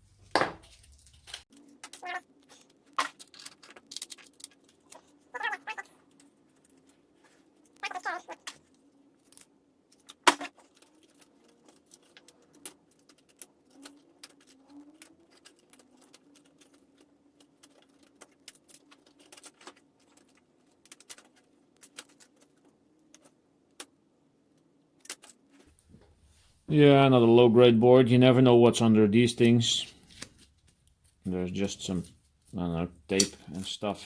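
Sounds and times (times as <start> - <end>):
small plastic and metal parts clattering: 0.6 - 23.9.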